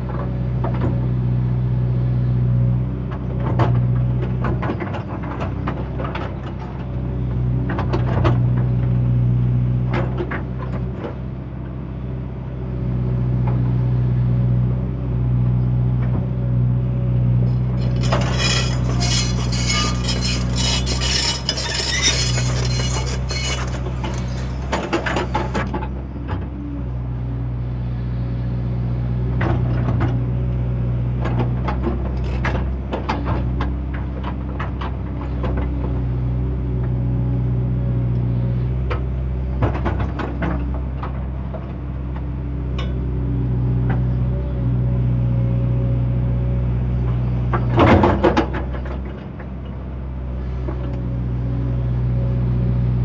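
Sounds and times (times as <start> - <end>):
excavator diesel engine running: 17.4 - 26.4
metallic clanking and scraping: 17.5 - 25.8.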